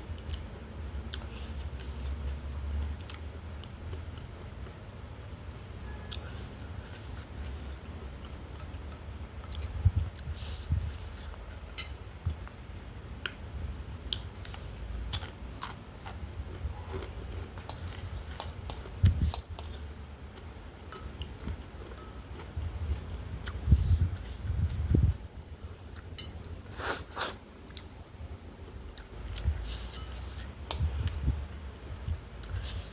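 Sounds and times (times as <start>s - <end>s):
person chewing: 0.2s - 0.4s, 1.1s - 4.8s, 14.1s - 25.2s, 32.4s - 32.9s.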